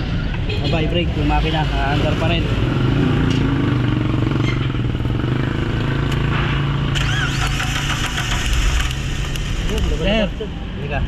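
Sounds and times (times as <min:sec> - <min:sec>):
engine idling roughly: 0:04.8 - 0:09.5
sharp snapping clicks: 0:05.0 - 0:06.4.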